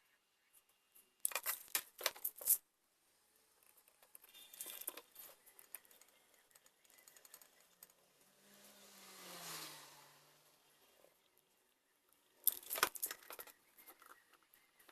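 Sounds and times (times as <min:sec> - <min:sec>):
sharp clicks and rattles: 0:01.0 - 0:02.6, 0:03.6 - 0:08.3, 0:12.4 - 0:14.9
soft rustling and small clicks: 0:03.4 - 0:08.1, 0:12.4 - 0:14.9.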